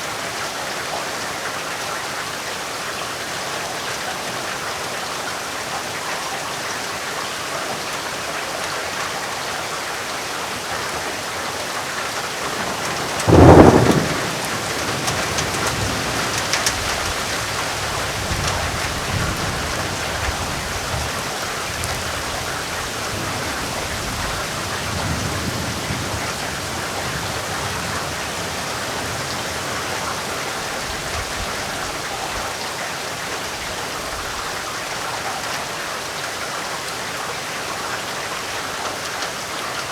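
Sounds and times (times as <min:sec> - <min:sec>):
heavy rain: 0:00.0 - 0:39.9
thunderclap and rolling thunder: 0:12.3 - 0:31.9.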